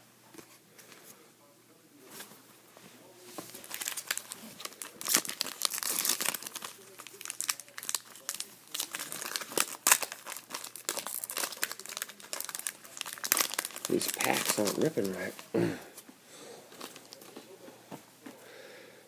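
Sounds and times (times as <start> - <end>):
wrapper tearing and crinkling: 3.5 - 15.5.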